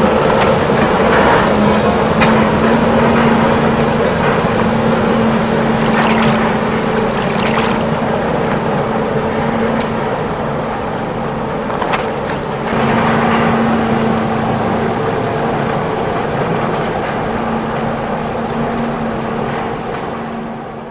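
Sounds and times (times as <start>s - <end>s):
toy excavator mechanical hum: 4.0s - 8.9s.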